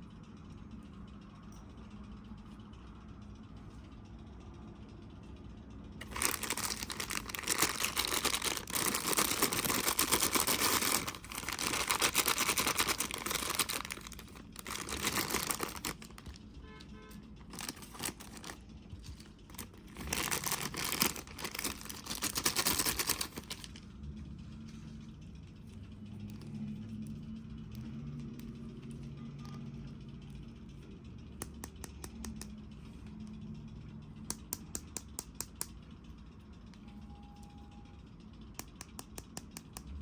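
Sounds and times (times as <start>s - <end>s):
plastic packaging crinkling and tearing: 6.0s - 16.4s, 17.4s - 23.8s.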